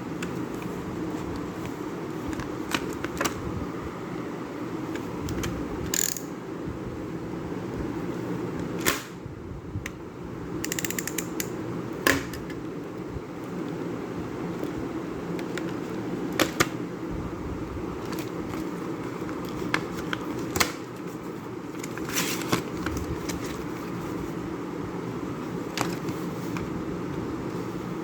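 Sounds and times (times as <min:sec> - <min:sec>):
steady background hum: 0:00.0 - 0:28.0
metal and plastic parts clicking: 0:04.9 - 0:06.3, 0:10.6 - 0:11.5
ratchet clicks: 0:05.9 - 0:06.3, 0:10.6 - 0:11.6.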